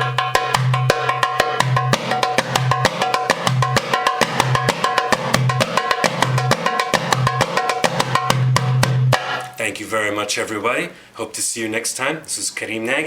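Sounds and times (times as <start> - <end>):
hand drum rhythm: 0.0 - 9.6.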